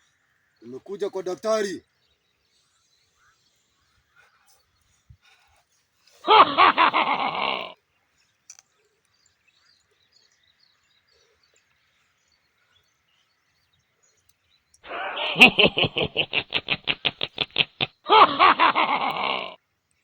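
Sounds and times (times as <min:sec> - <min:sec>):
person making rapid pulsed sounds: 0:14.9 - 0:19.6.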